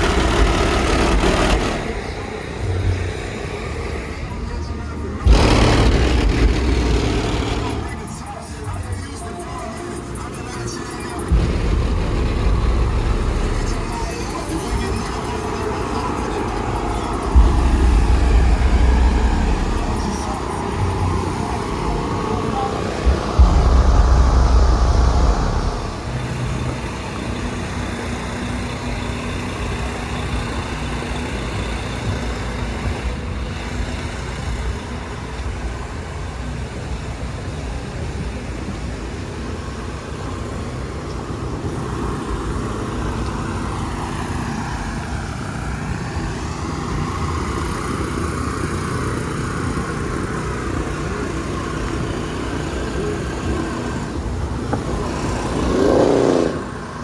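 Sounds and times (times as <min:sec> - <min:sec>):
car engines running: 0:00.0 - 0:57.0
low hum: 0:04.8 - 0:08.1, 0:11.3 - 0:14.2, 0:17.3 - 0:26.5
loud low rumble: 0:05.2 - 0:08.0, 0:11.3 - 0:14.2, 0:17.3 - 0:26.5.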